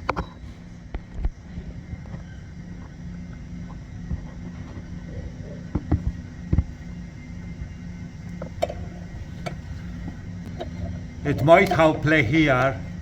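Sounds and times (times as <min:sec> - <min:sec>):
steady low hum: 0:00.0 - 0:13.0
loose ball joint knocking: 0:08.3 - 0:12.2.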